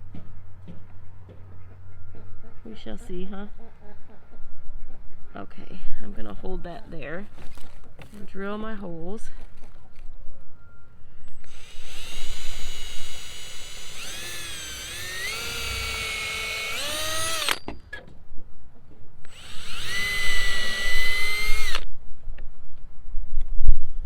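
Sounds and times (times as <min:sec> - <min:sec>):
power drill whining: 0:11.4 - 0:18.0, 0:19.2 - 0:21.9.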